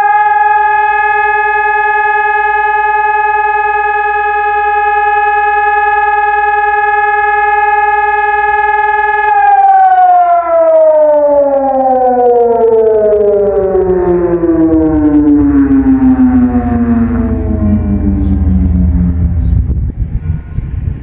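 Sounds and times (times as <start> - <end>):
siren winding down: 0.0 - 20.4.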